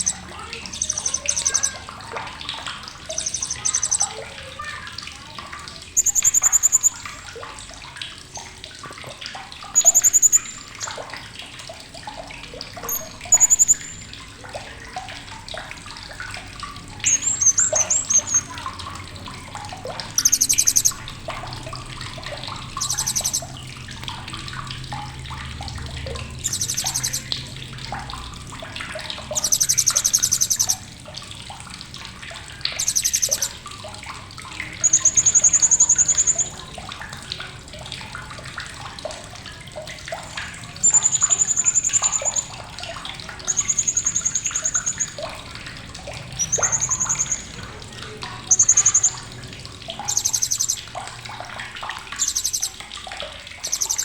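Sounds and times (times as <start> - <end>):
parrot high-pitched trilling chirps: 0.0 - 1.9, 3.0 - 4.4, 5.9 - 7.2, 9.8 - 11.0, 12.8 - 14.1, 17.0 - 18.6, 20.1 - 21.0, 22.8 - 23.5, 26.4 - 27.5, 29.4 - 30.8, 32.7 - 33.6, 34.8 - 36.6, 40.8 - 42.5, 43.4 - 45.2, 46.4 - 49.3, 50.1 - 50.9, 52.2 - 52.8, 53.6 - 54.0.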